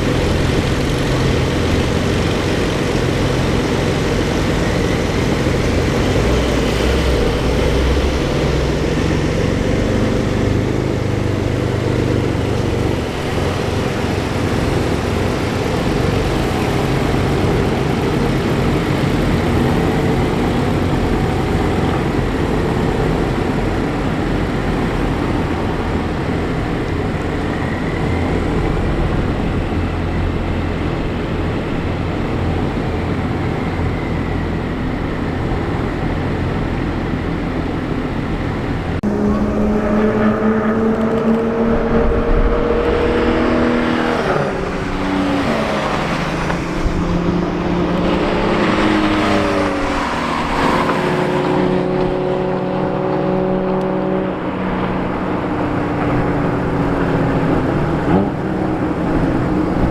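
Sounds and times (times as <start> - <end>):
sports car engine running: 0.0 - 59.9.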